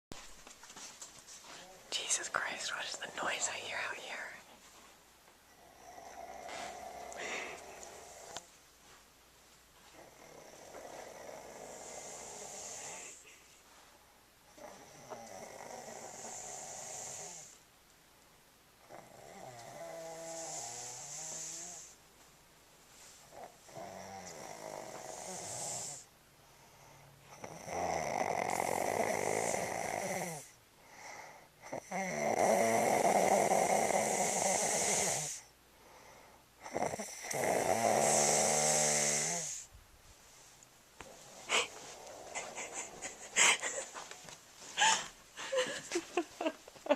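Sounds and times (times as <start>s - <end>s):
rasping snores: 5.5s - 8.5s, 10.0s - 13.2s, 14.5s - 17.6s, 18.8s - 22.0s, 23.3s - 26.1s, 27.3s - 35.5s, 36.6s - 39.7s.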